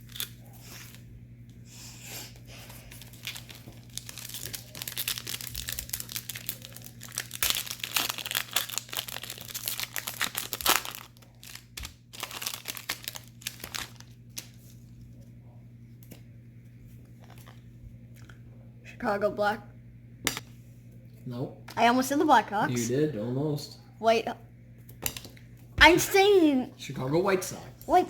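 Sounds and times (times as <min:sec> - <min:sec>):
foil wrapper crinkling and tearing: 0:02.6 - 0:15.0.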